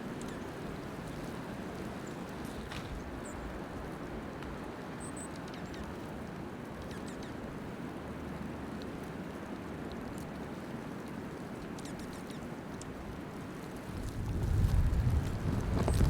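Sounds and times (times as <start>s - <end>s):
blizzard wind: 12.6s - 16.0s.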